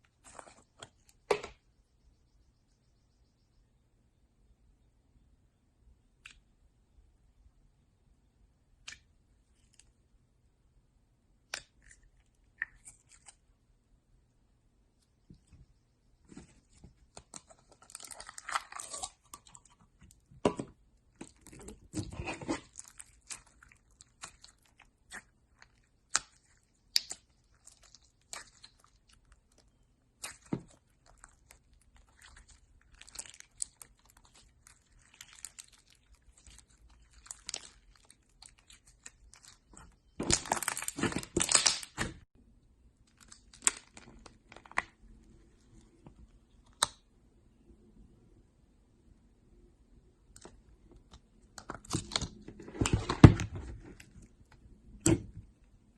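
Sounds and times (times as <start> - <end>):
crunchy slime crackling: 17.2 - 19.8, 21.2 - 42.2.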